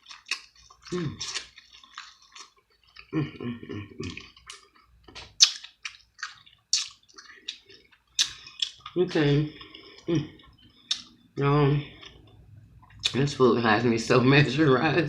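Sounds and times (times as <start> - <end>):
wet chewing and lip-smacking: 0.0 - 3.2, 4.0 - 11.2, 11.8 - 13.2.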